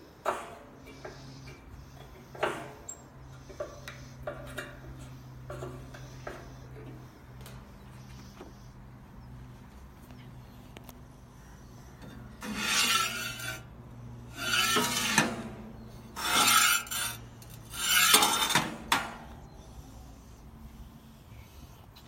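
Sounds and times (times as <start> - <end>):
rough scraping strokes: 12.2 - 19.0.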